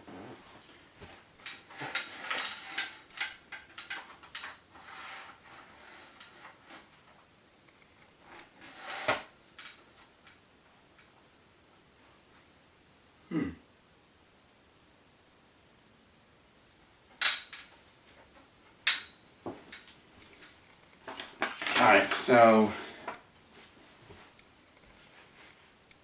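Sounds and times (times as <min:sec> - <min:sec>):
stand parts clinking and rattling: 0:01.4 - 0:07.3, 0:09.6 - 0:10.4, 0:17.2 - 0:20.0.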